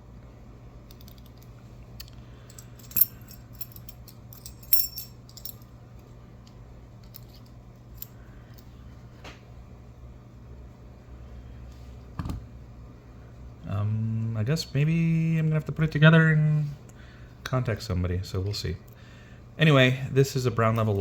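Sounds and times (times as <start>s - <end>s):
small metal parts clinking: 0.9s - 5.7s, 7.0s - 8.7s.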